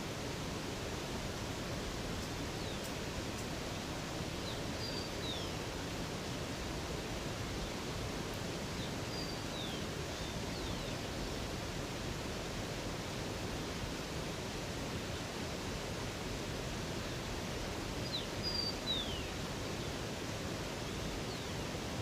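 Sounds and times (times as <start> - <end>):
rushing river water: 0.0 - 22.0
small birds chirping: 4.4 - 5.6, 18.1 - 19.4.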